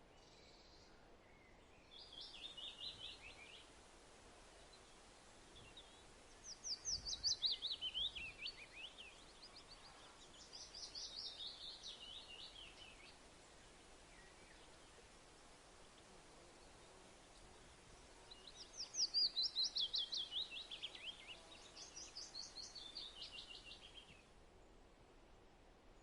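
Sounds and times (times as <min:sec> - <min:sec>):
faint steady hiss: 0:00.0 - 0:26.0
bird singing: 0:00.2 - 0:03.6, 0:05.6 - 0:13.2, 0:18.3 - 0:24.2.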